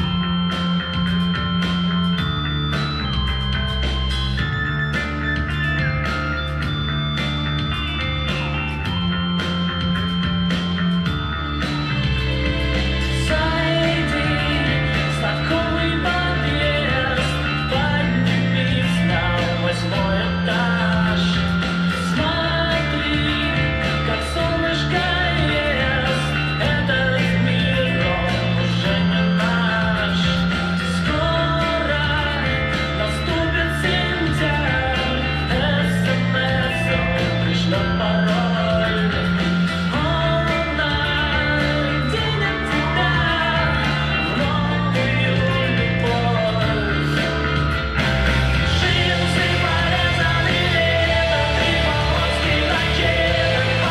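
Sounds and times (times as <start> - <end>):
bass line: 0.0 - 53.9
electric guitar: 0.0 - 53.9
person singing: 12.8 - 48.0, 48.6 - 53.9.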